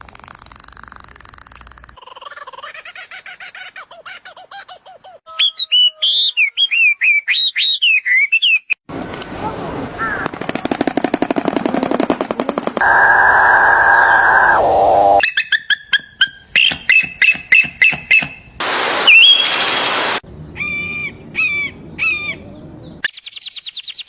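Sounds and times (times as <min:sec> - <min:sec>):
rapidly pulsed animal call: 0:12.8 - 0:15.2
whistled bird-like notes: 0:12.8 - 0:16.0, 0:16.6 - 0:22.4.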